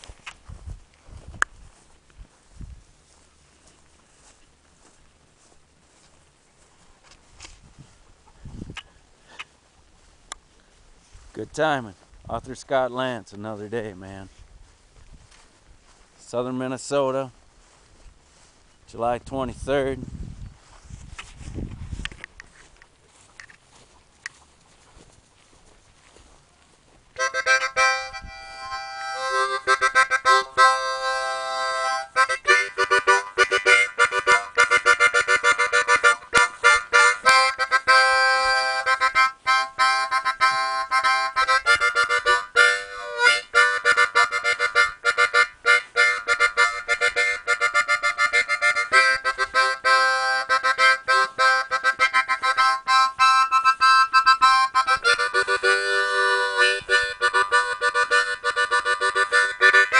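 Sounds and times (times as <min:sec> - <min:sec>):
harmonica chords: 0:27.2 - 0:59.9.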